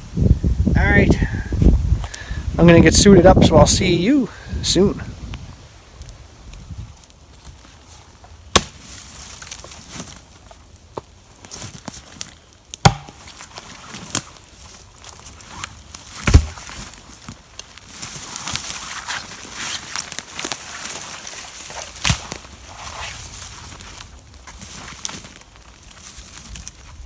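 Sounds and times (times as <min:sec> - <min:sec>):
sharp knocks and thumps: 0:12.8 - 0:13.3, 0:16.2 - 0:16.7.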